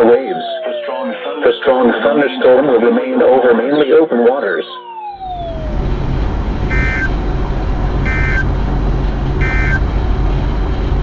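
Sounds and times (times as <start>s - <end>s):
road rumble inside car: 5.4s - 11.0s
short electronic beeps: 6.7s - 7.1s, 8.1s - 8.5s, 9.4s - 9.8s.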